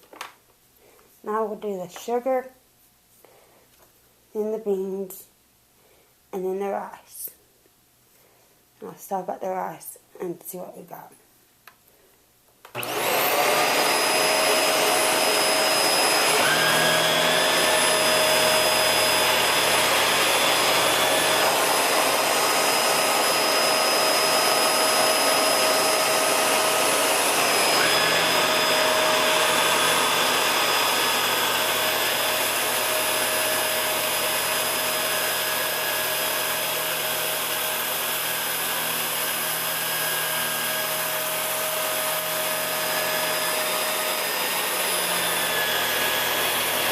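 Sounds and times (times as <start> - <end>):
vacuum cleaner motor whine: 12.7 - 46.9.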